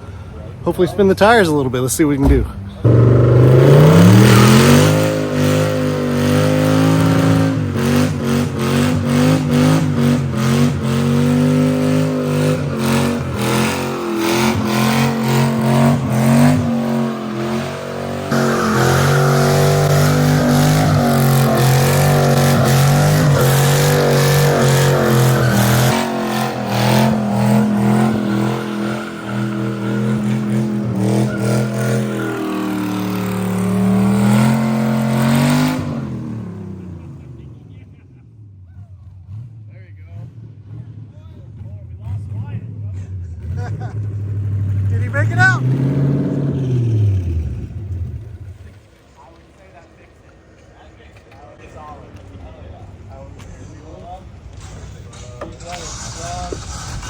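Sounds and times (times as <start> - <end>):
tires squealing: 0.0 - 37.6, 43.0 - 57.0
car engine revving: 2.0 - 38.1, 38.8 - 49.7, 54.2 - 57.0.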